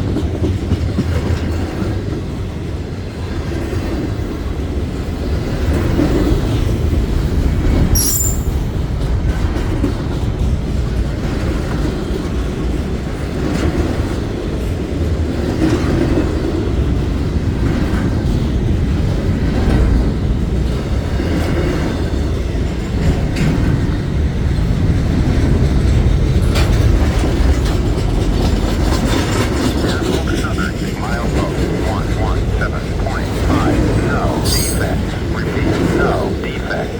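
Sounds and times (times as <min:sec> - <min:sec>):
clickety-clack over rail joints: 0:00.0 - 0:07.0, 0:09.0 - 0:30.2
train wheels rumbling on rail: 0:00.0 - 0:32.2
wheel squeal on rail: 0:08.0 - 0:08.6.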